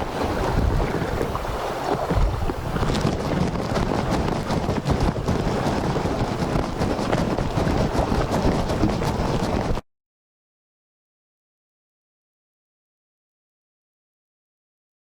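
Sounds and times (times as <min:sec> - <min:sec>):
sea surf: 0:00.0 - 0:09.8
wind buffeting microphone: 0:00.0 - 0:09.8.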